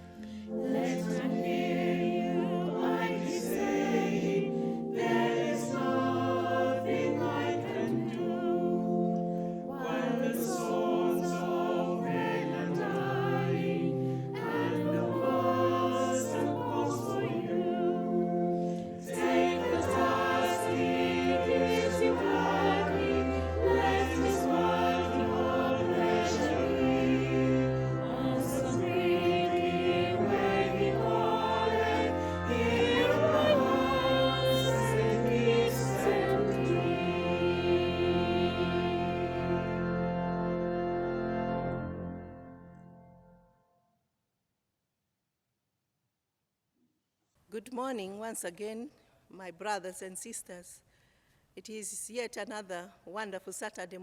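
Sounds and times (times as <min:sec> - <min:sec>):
choir singing in harmony: 0:00.0 - 0:42.5.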